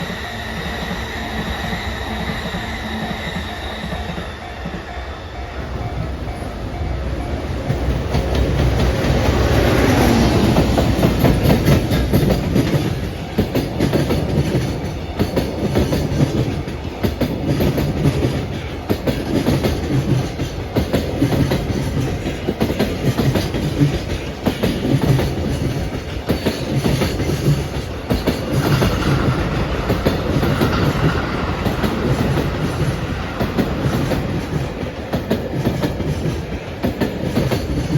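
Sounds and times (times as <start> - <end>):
electric locomotive passing: 0.0 - 37.9
wagon wheels clattering on rails: 7.7 - 37.9.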